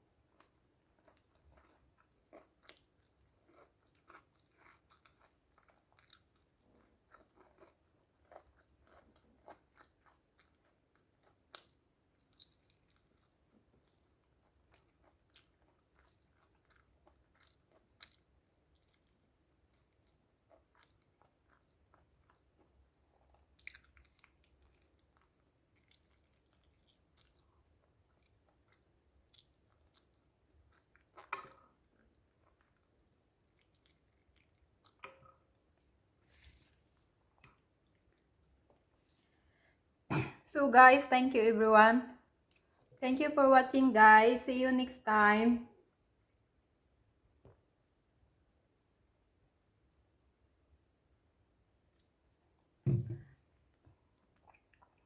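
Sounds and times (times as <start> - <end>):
person chewing food: 0.1 - 40.0, 42.2 - 43.0, 51.8 - 55.0
wet mouth clicks and smacks: 11.5 - 11.8.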